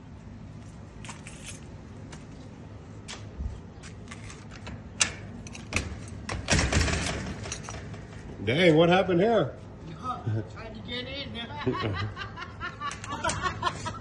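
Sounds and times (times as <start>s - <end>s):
keys jangling: 1.0s - 1.7s.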